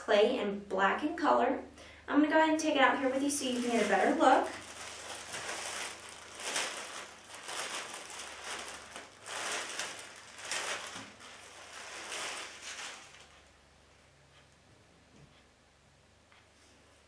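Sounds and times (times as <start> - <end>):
packaging rustling by hand: 2.9 - 13.5.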